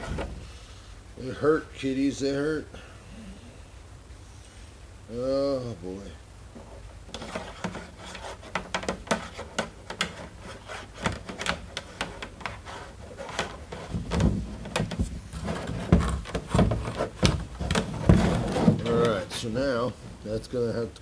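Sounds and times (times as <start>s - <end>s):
hands clicking and tapping parts: 6.6s - 19.4s
heavy knocks: 13.7s - 19.5s.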